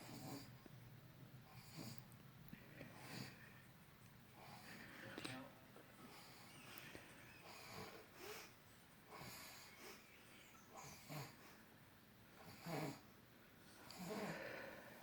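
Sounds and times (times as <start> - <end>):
man snoring: 13.9 - 14.7.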